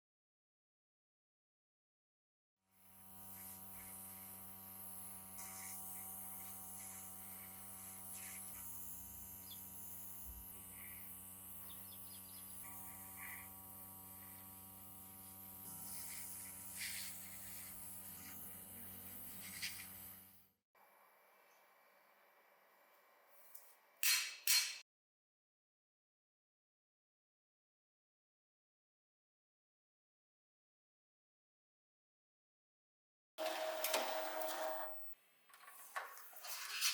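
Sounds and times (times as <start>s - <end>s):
electric hum: 2.8s - 20.4s
small parts clicking and scraping: 35.5s - 36.9s.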